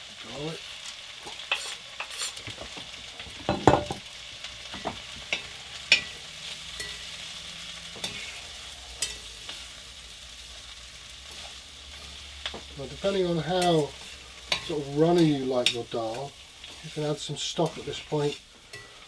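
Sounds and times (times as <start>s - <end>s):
food sizzling in a pan: 0.0s - 19.0s
utensil knocking and scraping pan: 1.2s - 4.0s, 12.0s - 18.9s.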